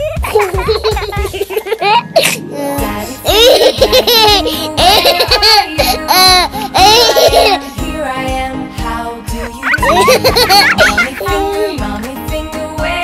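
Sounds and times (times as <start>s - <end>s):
baby laughing: 0.0s - 7.7s, 9.4s - 11.8s
children's background music: 0.0s - 13.0s.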